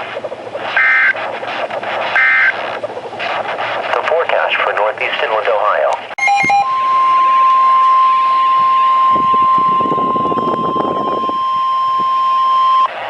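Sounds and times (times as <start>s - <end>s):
crackling radio noise: 0.0s - 11.3s
steady warning beep tone: 0.8s - 1.2s, 2.2s - 2.6s, 6.1s - 12.9s.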